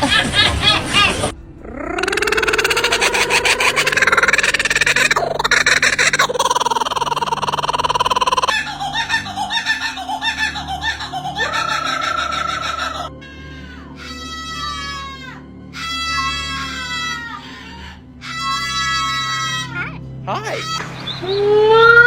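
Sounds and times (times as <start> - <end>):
pet bird raspy buzzing call: 1.8 - 13.2.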